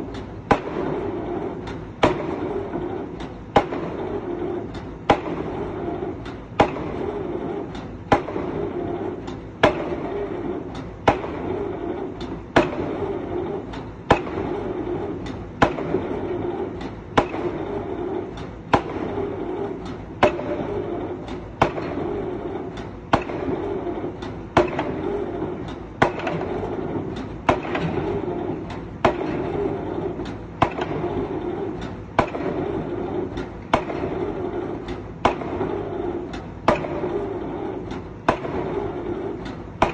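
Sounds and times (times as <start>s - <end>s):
drop hammer banging: 36.6s - 37.1s, 38.2s - 38.7s.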